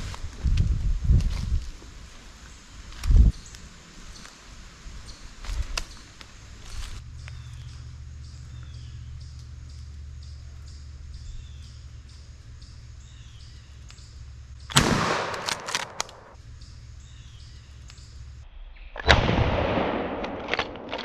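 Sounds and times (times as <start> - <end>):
shotgun blasts with echo: 14.7 - 16.4, 19.0 - 20.9.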